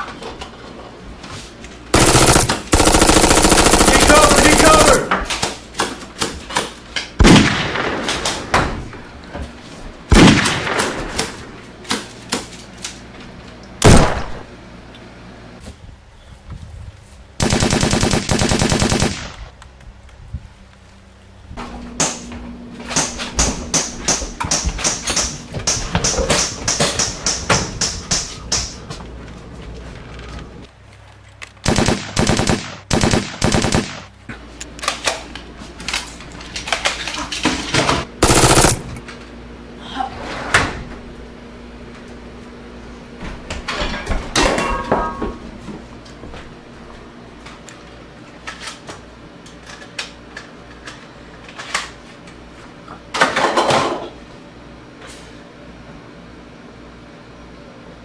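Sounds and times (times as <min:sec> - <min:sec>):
gunshots: 0:02.0 - 0:05.1, 0:07.2 - 0:08.4, 0:10.1 - 0:11.3, 0:13.8 - 0:14.5, 0:17.4 - 0:19.5, 0:31.6 - 0:34.1, 0:38.2 - 0:38.9.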